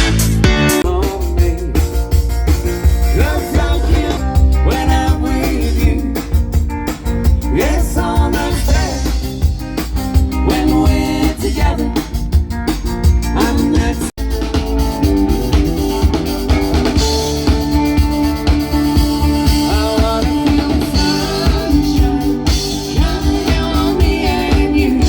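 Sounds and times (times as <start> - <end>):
drums: 0.0 - 25.0
guitar: 0.0 - 25.0
person singing: 0.8 - 2.1, 3.0 - 6.4, 18.8 - 25.0.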